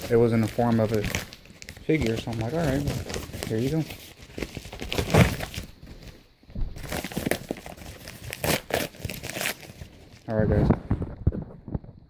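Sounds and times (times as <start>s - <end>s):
packaging crinkling and tearing: 0.0s - 6.1s, 6.8s - 10.3s.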